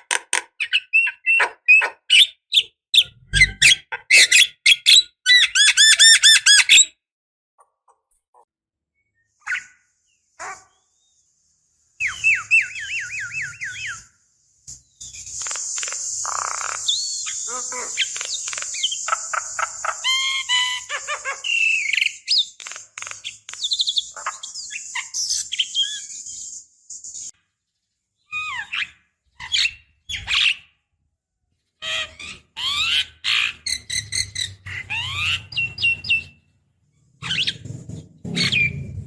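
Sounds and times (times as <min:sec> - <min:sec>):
myna bird singing whistles and chatters: 0:00.5 - 0:07.0, 0:11.8 - 0:27.4, 0:31.8 - 0:36.4, 0:37.2 - 0:37.7.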